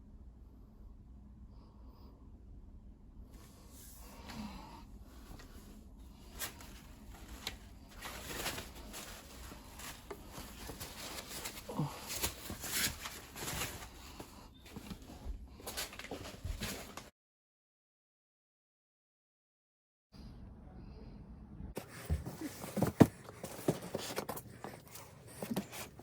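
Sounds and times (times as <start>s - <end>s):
unpacking rustles and clicks: 6.3s - 17.1s, 22.1s - 26.0s.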